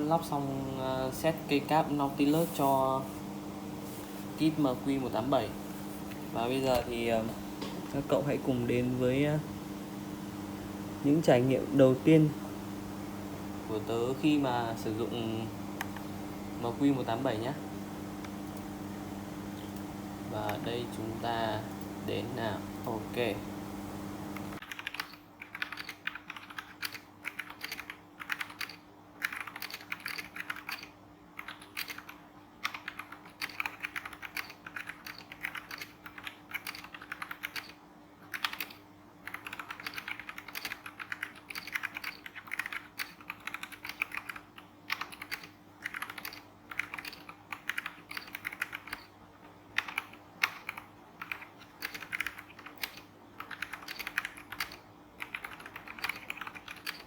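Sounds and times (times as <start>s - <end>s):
mechanical keyboard typing: 24.6s - 49.1s, 49.7s - 57.0s.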